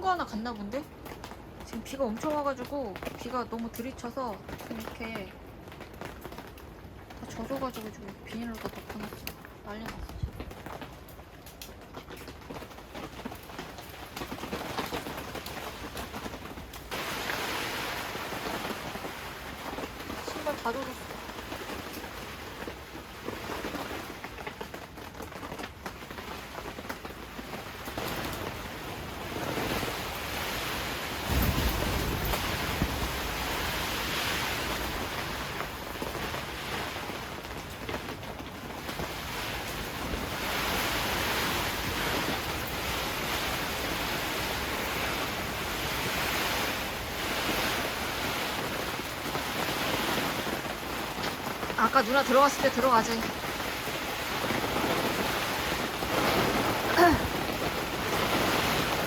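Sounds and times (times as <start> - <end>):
heavy rain falling: 0.0 - 59.0
gusty wind: 9.6 - 10.8, 27.2 - 59.0
wind buffeting microphone: 9.8 - 10.7, 28.0 - 51.5.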